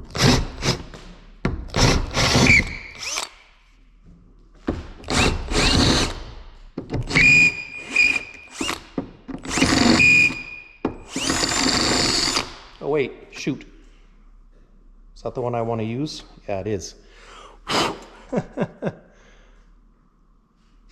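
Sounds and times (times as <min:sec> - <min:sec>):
power drill whining: 0:00.1 - 0:00.8, 0:01.7 - 0:03.4, 0:05.0 - 0:06.3, 0:07.0 - 0:12.6.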